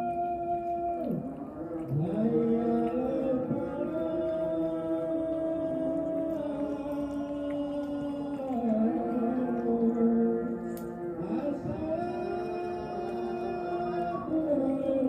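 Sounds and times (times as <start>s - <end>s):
chant-like vocal melody: 0.0s - 15.0s.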